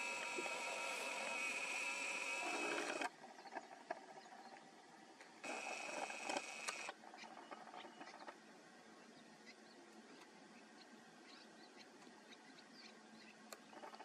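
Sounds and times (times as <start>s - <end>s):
high-pitched buzzing drone: 0.0s - 3.0s
faint clicks: 5.4s - 6.9s.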